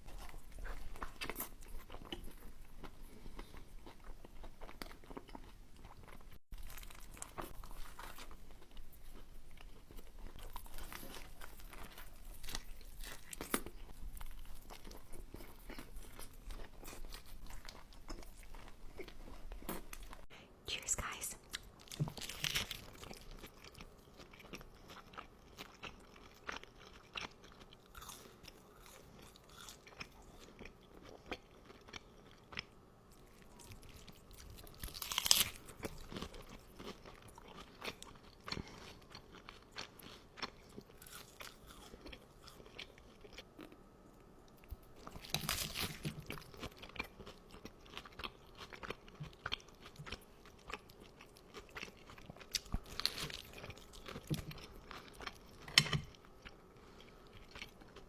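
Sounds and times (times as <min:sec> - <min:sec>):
wet chewing and crunching: 0:00.0 - 0:20.3, 0:21.5 - 0:58.0
loud crunchy bite: 0:34.6 - 0:36.2.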